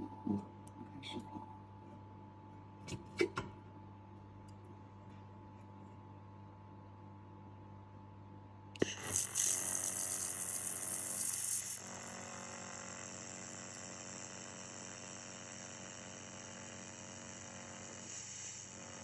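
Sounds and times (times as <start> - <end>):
steady machine hum: 6.2 - 19.0
laser welder hissing: 8.8 - 19.0.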